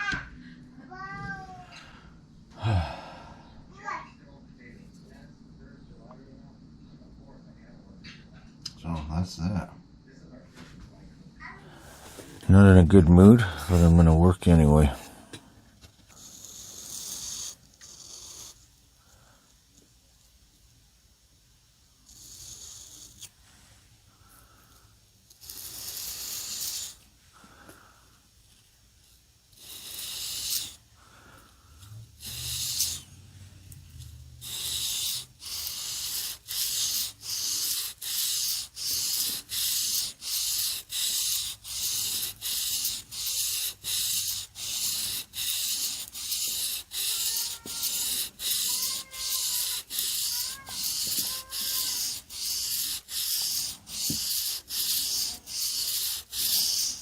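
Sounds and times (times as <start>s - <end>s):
knife scraping on sharpening stone: 34.4s - 57.0s.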